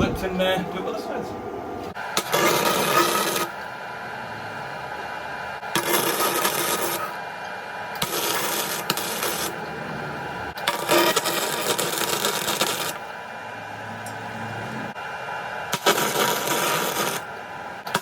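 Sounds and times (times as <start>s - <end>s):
welder arc crackling: 2.0s - 13.1s, 15.0s - 18.0s.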